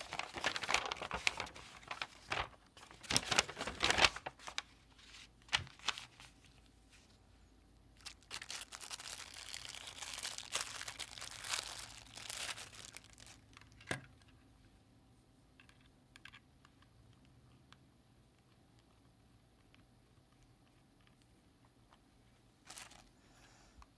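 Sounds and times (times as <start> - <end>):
packaging crinkling: 0.0 - 6.3, 8.0 - 13.7, 22.7 - 23.1.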